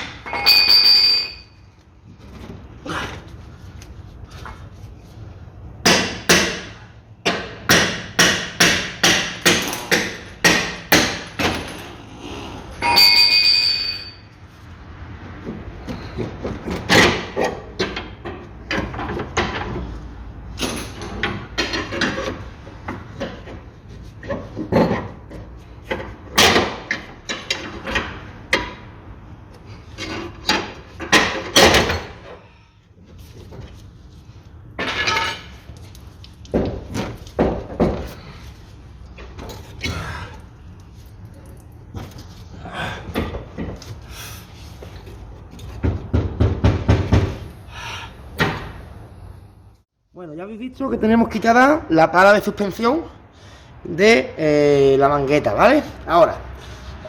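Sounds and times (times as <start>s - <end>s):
ringing metallic clang: 0.2s - 1.6s, 12.8s - 14.3s
hammer striking metal: 5.8s - 11.4s.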